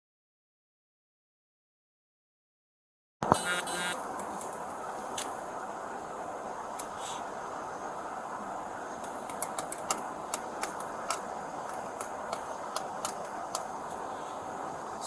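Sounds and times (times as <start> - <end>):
steady background hum: 3.2 - 15.0
sharp irregular clicks: 9.0 - 13.9.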